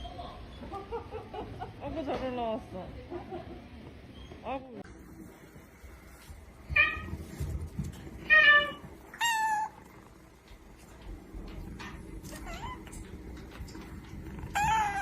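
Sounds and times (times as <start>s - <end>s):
cat meowing: 8.3s - 9.8s, 14.5s - 15.0s.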